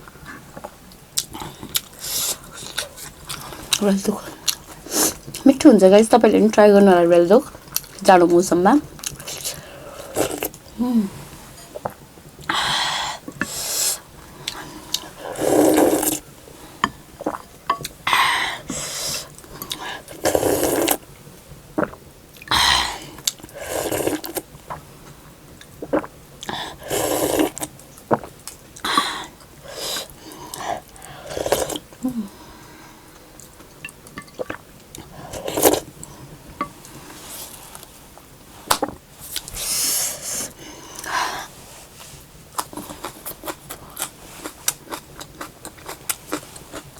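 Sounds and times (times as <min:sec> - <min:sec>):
slurping soup: 0:09.1 - 0:10.6, 0:12.6 - 0:16.3, 0:18.5 - 0:21.0, 0:22.8 - 0:24.5, 0:25.8 - 0:31.9, 0:34.3 - 0:36.0
chewing: 0:42.6 - 0:46.9.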